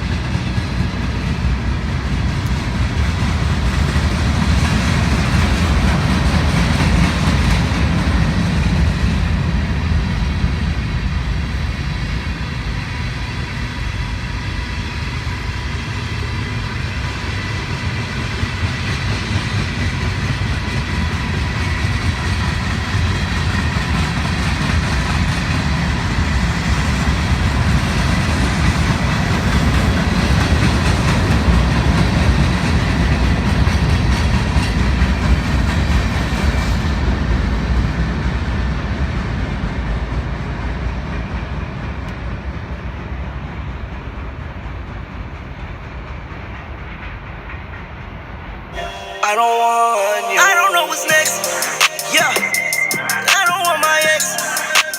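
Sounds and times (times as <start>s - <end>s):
train wheels on rail: 0.0s - 48.8s
faint high steady tones: 48.8s - 54.9s.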